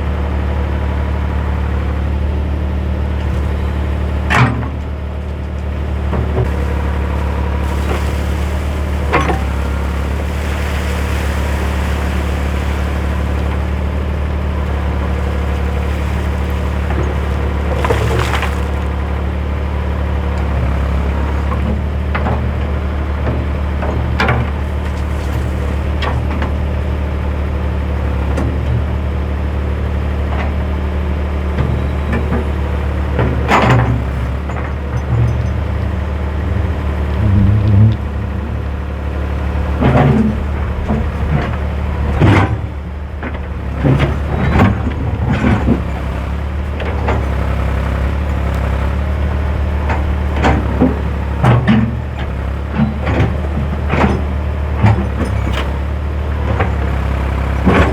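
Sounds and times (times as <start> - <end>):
backhoe engine running: 0.0 - 57.9
knocks and clanks: 33.2 - 38.9.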